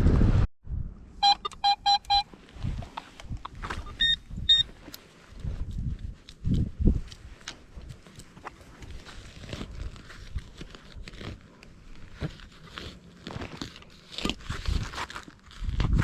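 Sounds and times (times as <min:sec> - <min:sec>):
faint crackling and rustling: 0:04.6 - 0:16.0.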